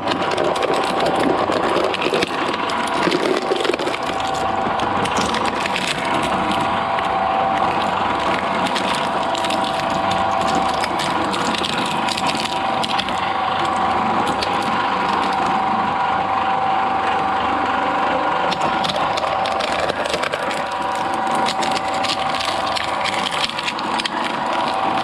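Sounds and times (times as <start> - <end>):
material crackling and snapping: 0.0 - 15.7, 18.4 - 25.0
shredder machine whining: 0.0 - 25.0.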